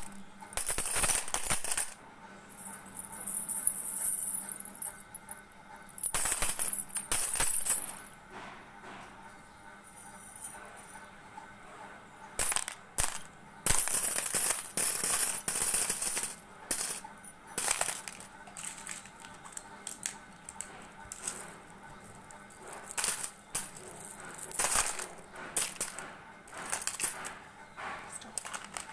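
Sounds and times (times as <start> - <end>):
small hard objects clinking: 12.4 - 27.3.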